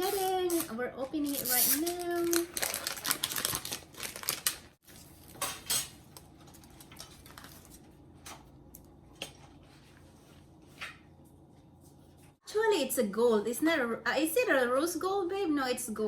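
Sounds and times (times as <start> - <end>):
packaging being handled and opened: 0.0 - 5.4.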